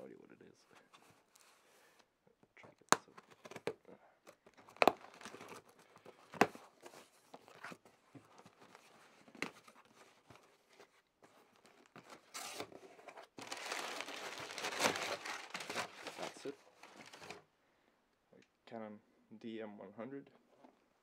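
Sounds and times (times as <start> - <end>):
packaging rustling and tearing: 3.1 - 17.4
packaging snapping: 13.4 - 17.4.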